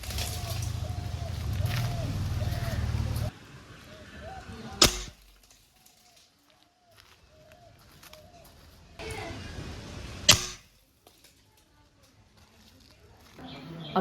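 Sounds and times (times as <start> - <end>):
air rifle shot crack: 4.8 - 5.3, 10.3 - 10.7.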